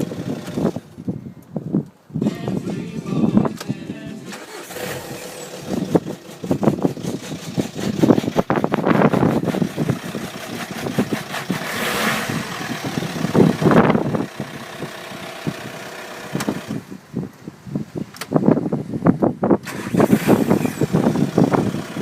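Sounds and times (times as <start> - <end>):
diesel engine idling roughly: 4.4 - 11.7.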